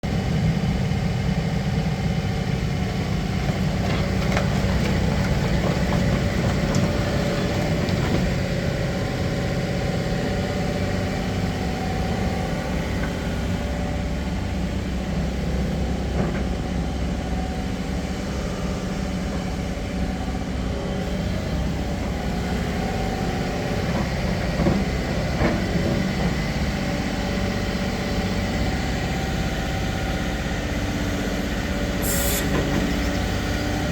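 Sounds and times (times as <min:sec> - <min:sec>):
excavator diesel engine running: 0:00.1 - 0:33.9.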